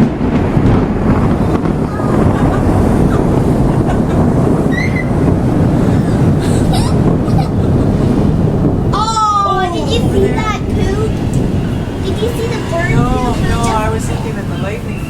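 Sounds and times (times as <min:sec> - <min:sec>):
rolling thunder: 0:00.0 - 0:15.0.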